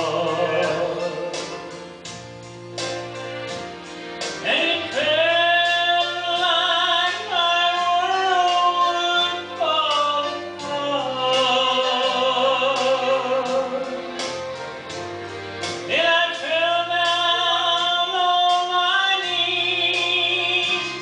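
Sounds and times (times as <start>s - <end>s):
vocal group singing with vibrato: 0.0s - 1.8s
bass line and steady beat: 0.0s - 21.0s.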